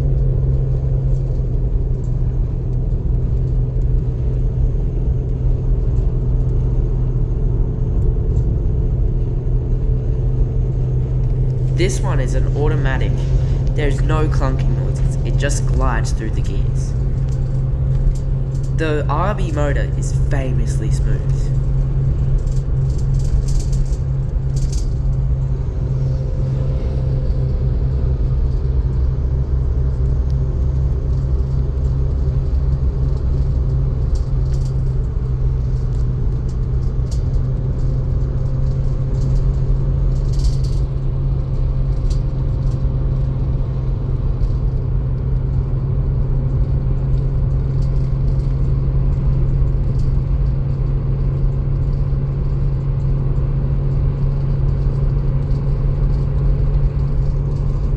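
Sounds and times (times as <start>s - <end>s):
car engine drone: 11.3s - 21.8s.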